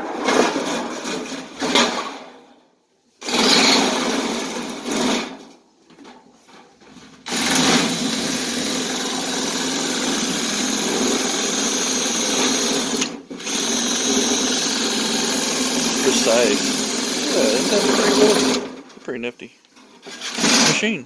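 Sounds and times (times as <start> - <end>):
power cutting tool running: 7.3 - 18.6.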